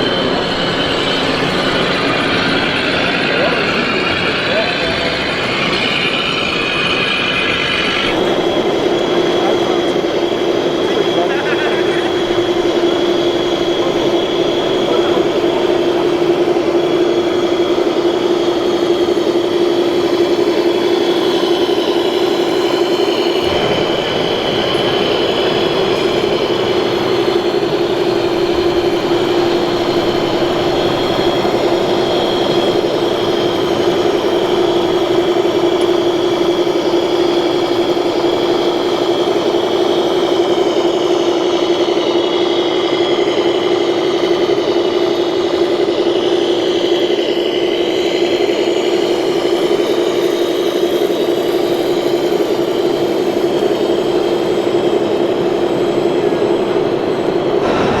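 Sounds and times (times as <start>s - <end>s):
electric motor whine: 0.0s - 42.2s.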